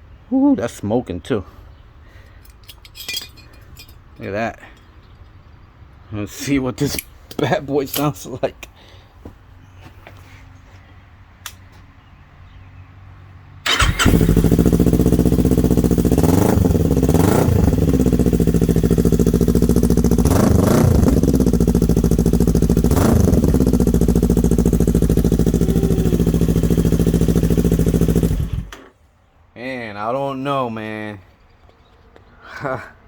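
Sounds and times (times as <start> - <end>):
motorcycle engine starting: 13.6 - 29.0
loud motorcycle engine revving: 13.7 - 28.7.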